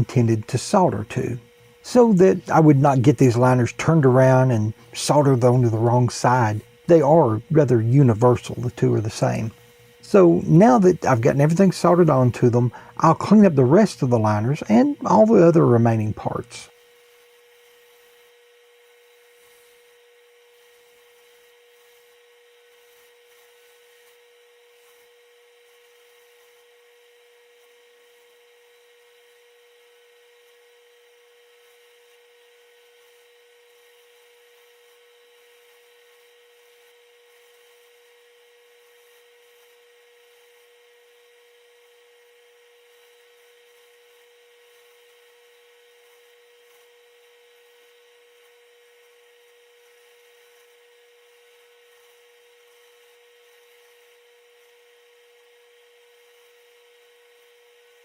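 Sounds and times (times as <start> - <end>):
even hiss: 0.0 - 16.7
faint steady hum: 0.0 - 58.0.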